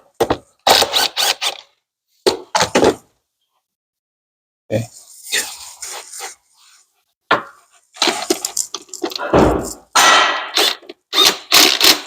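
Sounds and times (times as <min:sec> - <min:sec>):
knocks clinks and scrapes: 0:07.4 - 0:10.0.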